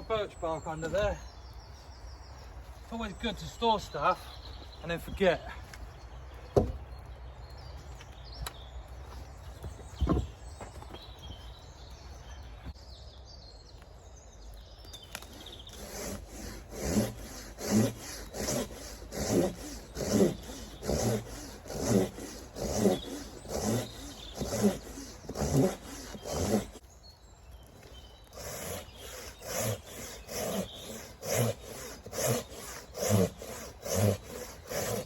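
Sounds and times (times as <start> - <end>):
hand saw cutting log: 15.1 - 26.8, 28.2 - 35.0.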